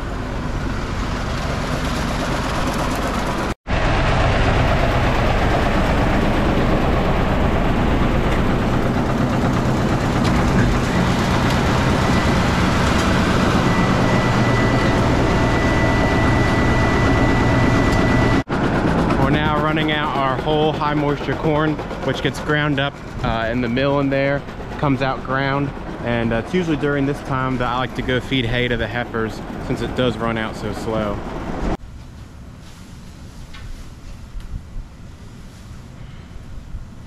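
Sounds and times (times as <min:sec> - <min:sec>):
thin steady whine: 0:00.0 - 0:37.0
grain mill grinding: 0:04.6 - 0:17.0.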